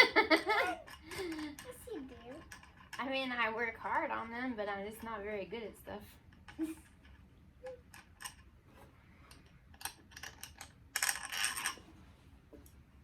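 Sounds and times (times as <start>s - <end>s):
rustling and clattering: 0.0s - 5.4s, 6.2s - 13.0s
small hard parts clicking: 0.6s - 5.3s, 6.3s - 8.5s, 9.2s - 11.8s.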